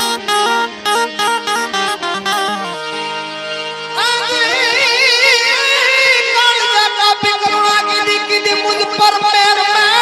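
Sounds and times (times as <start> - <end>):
accompanying drone: 0.0 - 5.9
person singing with vibrato: 3.9 - 10.0.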